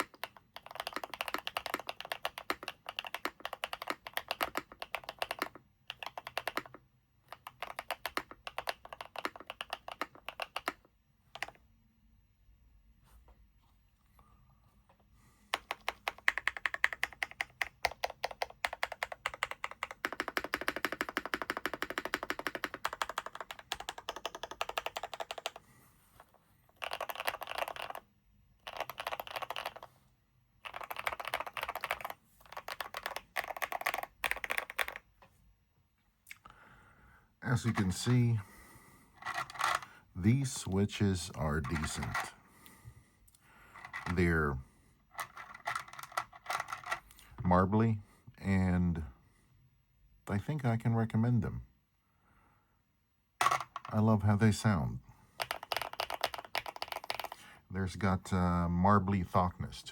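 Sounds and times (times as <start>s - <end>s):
mechanical keyboard typing: 0.0s - 11.6s, 15.5s - 25.6s, 26.7s - 29.9s, 30.6s - 35.2s, 45.2s - 47.0s, 55.4s - 57.4s.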